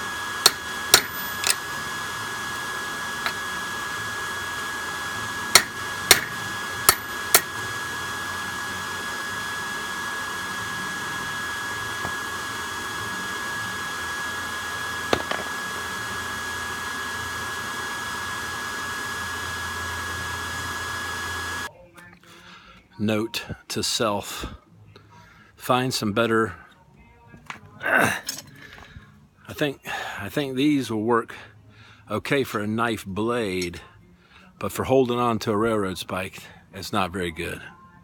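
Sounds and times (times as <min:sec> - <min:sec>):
air blower whine: 0:00.0 - 0:21.7
metal clanks on anvil: 0:00.5 - 0:01.7, 0:05.6 - 0:07.6.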